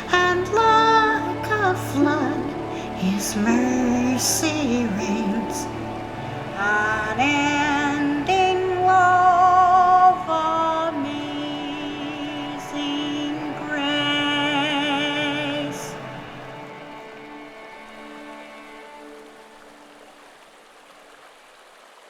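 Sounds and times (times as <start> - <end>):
woman singing with vibrato: 0.0 - 16.6
soft musical accompaniment: 0.0 - 21.2.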